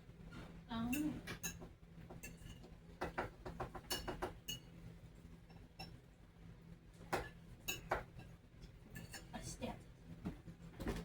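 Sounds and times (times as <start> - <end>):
cutlery and dishes clinking: 0.9 - 4.7, 7.1 - 9.3.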